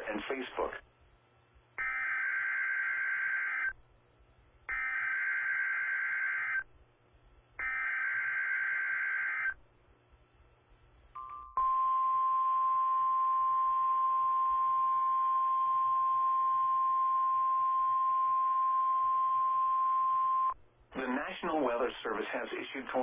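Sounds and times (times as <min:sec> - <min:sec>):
short tone: 0:11.2 - 0:16.6.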